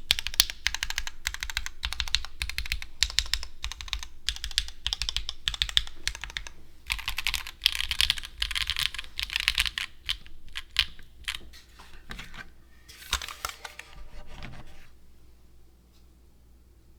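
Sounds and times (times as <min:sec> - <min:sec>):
typing on mechanical keyboard: 0:00.1 - 0:11.4.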